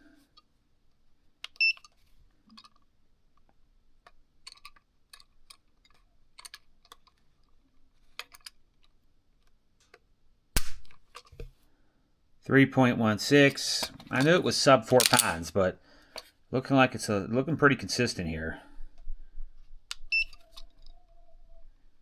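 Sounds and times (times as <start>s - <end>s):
small handling clicks: 0.3s - 10.1s, 10.8s - 11.6s, 13.7s - 15.4s, 19.9s - 21.2s.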